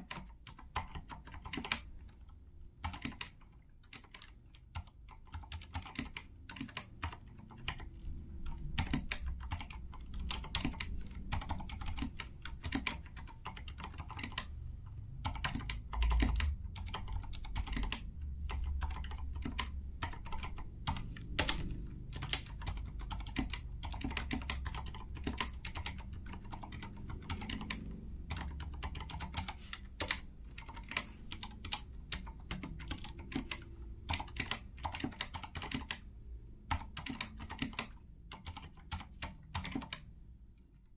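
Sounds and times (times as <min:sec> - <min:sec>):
quiet mechanical keyboard typing: 0:00.0 - 0:40.9.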